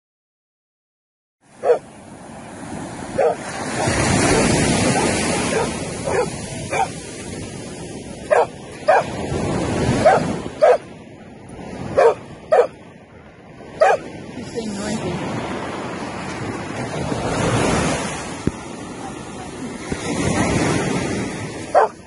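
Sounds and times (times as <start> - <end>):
dog yipping: 1.6 - 1.8, 3.2 - 3.4, 4.3 - 7.0, 8.3 - 9.1, 10.0 - 10.8, 12.0 - 12.7, 13.8 - 14.0, 21.8 - 22.0.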